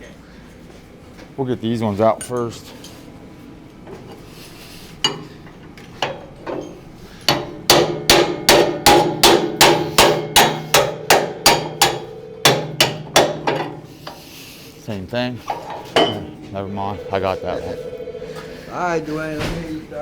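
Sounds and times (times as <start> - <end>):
hammer ringing on steel: 7.3 - 13.9, 16.0 - 18.8.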